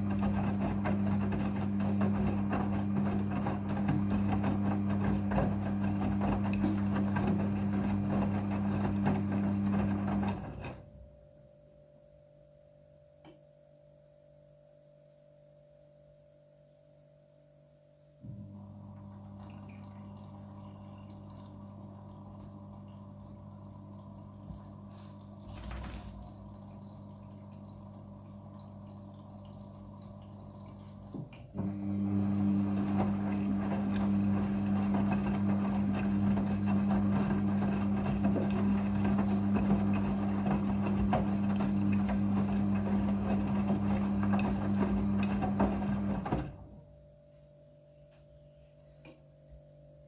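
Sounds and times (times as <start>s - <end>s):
washing machine humming: 0.0s - 11.2s, 18.2s - 47.3s
water rushing through machine: 19.1s - 46.6s.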